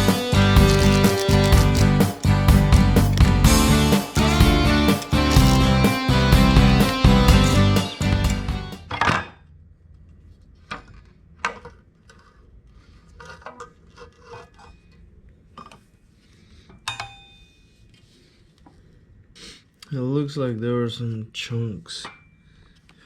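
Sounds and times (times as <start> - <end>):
metal tools clinking: 4.0 - 5.7.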